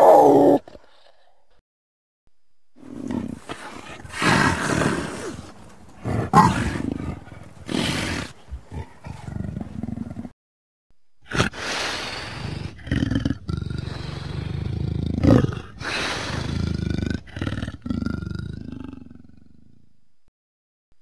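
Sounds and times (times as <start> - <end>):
dinosaur roaring calls: 3.0 - 10.2.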